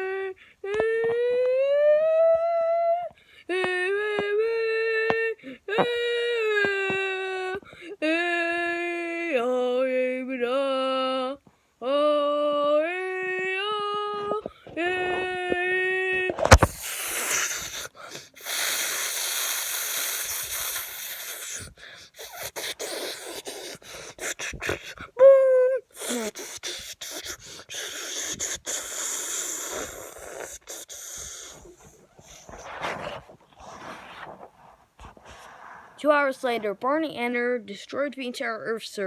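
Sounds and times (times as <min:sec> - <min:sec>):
breathy hissing vocal noises: 0:16.5 - 0:25.2, 0:25.9 - 0:36.7.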